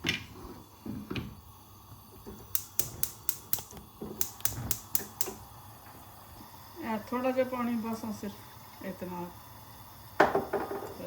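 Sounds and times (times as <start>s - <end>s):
sharp clicks: 2.5s - 5.4s.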